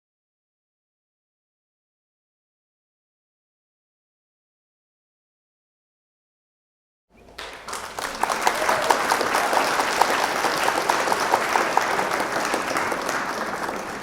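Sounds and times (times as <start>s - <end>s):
crowd applauding: 7.2s - 14.0s.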